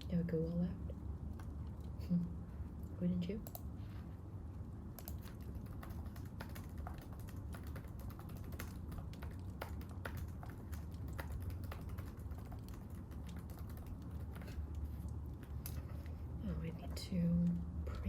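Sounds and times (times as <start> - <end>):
steady low rumble: 0.0 - 18.0
keyboard typing clicks: 3.4 - 3.7, 5.0 - 14.6.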